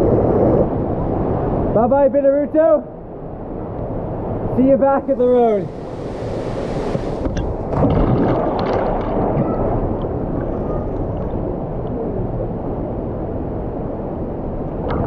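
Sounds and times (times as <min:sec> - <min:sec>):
river water rushing: 0:04.0 - 0:07.6.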